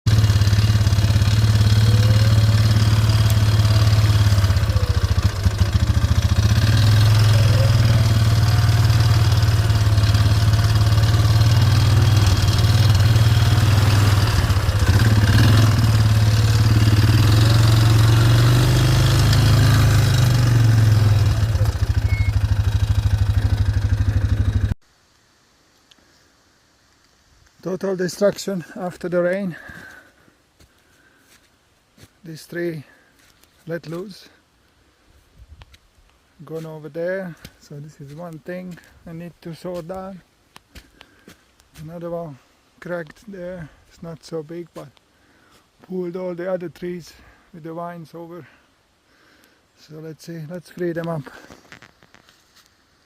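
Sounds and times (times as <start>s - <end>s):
small petrol engine running: 0.1s - 24.8s.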